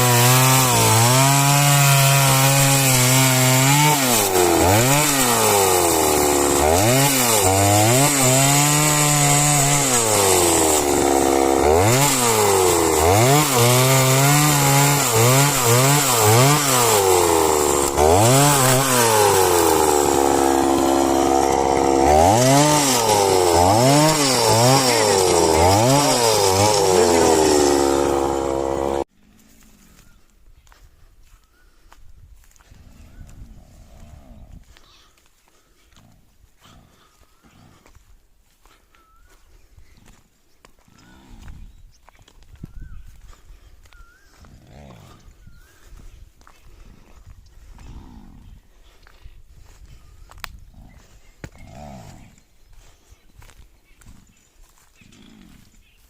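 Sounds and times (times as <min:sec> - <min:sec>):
chainsaw cutting wood: 0:00.0 - 0:29.1.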